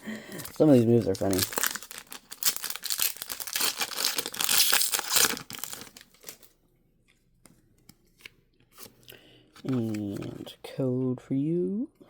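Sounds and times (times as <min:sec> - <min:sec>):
foil wrapper crinkling and tearing: 0:00.3 - 0:06.5.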